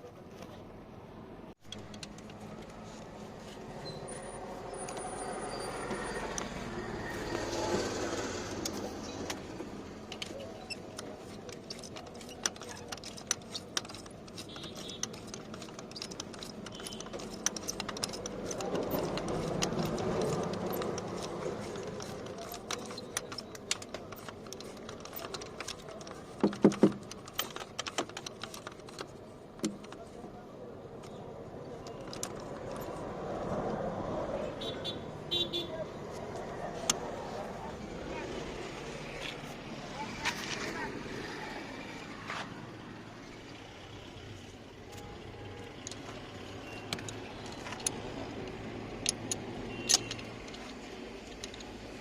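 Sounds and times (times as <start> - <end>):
steady background noise: 0.0 - 52.0
metallic clicks of hand tools: 10.0 - 30.1, 45.8 - 52.0.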